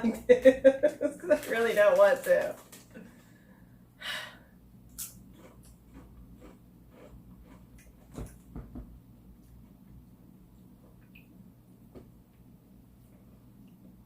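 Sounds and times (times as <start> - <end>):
chewing potato chip: 4.9 - 8.4.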